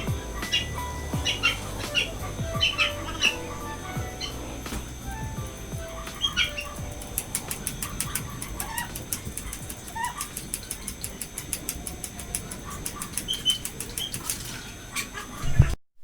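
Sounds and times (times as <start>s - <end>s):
bird chirps: 0.0s - 4.5s
faint ticking clicks: 4.8s - 14.6s.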